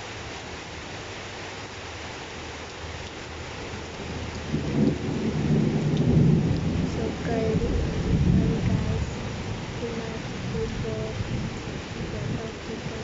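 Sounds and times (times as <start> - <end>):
steady rain: 0.0 - 13.0
low rumble of thunder: 3.7 - 13.0.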